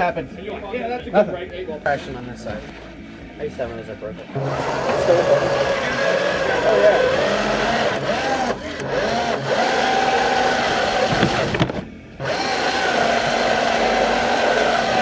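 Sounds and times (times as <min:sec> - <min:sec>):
electric motor and gears whining: 0:04.3 - 0:15.0.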